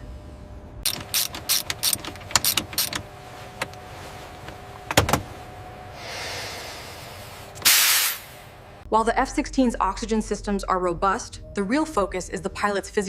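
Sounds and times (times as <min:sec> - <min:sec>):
faint steady hum: 0:00.0 - 0:13.0
sharp mechanical clicks: 0:00.8 - 0:03.0.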